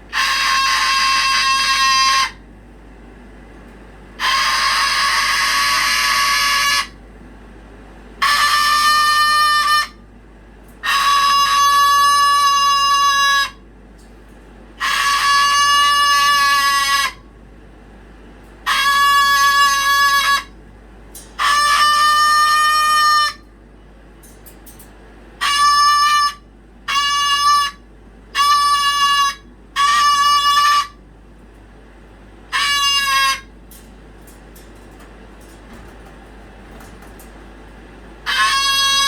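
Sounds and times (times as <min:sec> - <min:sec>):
pet animal crying shrilly: 0:00.1 - 0:02.4, 0:04.2 - 0:07.0, 0:14.8 - 0:17.2, 0:32.6 - 0:33.5, 0:38.2 - 0:39.0.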